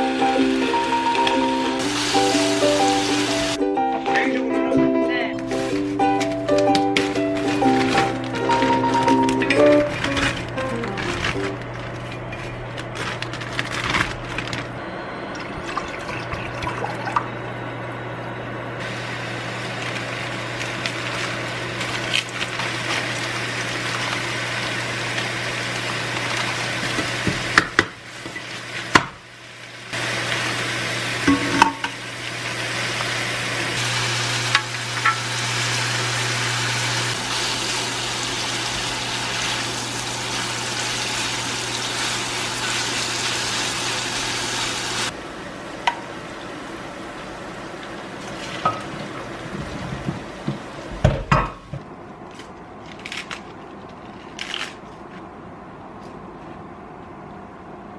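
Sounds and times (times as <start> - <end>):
food sizzling in a pan: 0.0 - 3.6, 18.8 - 45.1.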